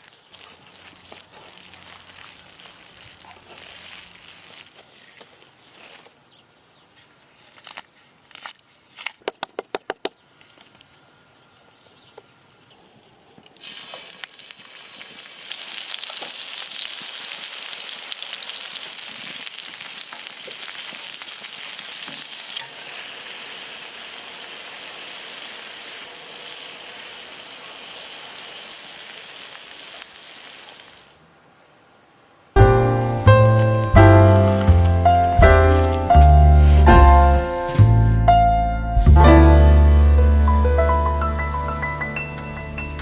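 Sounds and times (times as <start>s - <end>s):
food sizzling in oil: 13.6s - 31.1s, 32.6s - 38.2s, 39.0s - 43.0s.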